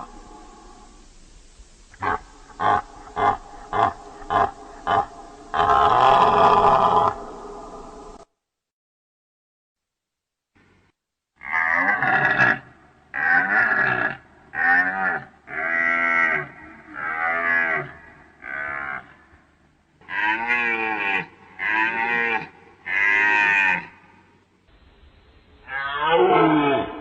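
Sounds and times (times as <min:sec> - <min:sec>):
deer calling: 0:01.9 - 0:08.2.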